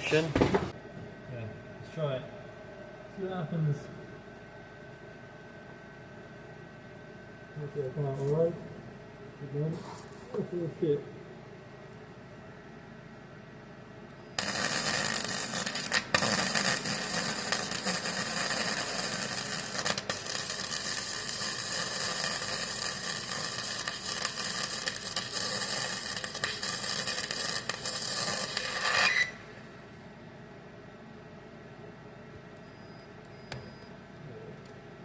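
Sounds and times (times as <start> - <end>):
welder arc crackling: 14.4 - 29.6.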